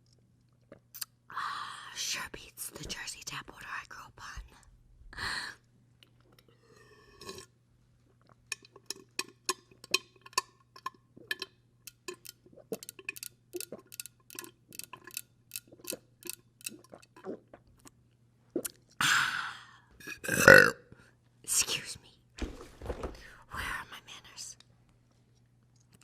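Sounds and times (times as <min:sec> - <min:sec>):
woman burping: 0:20.2 - 0:20.9.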